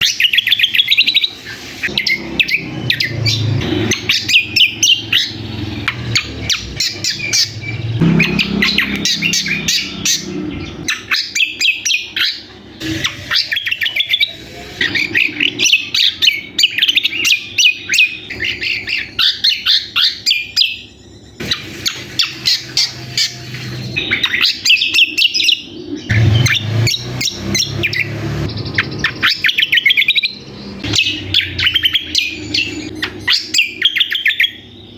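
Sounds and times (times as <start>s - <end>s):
songbird chattering song: 0.0s - 34.9s
steady low hum: 1.9s - 11.1s.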